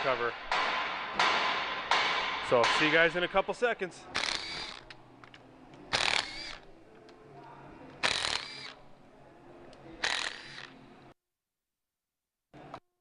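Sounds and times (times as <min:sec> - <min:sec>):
power ratchet whirring: 0:04.2 - 0:04.9, 0:05.9 - 0:06.6, 0:08.0 - 0:08.8, 0:10.0 - 0:10.8.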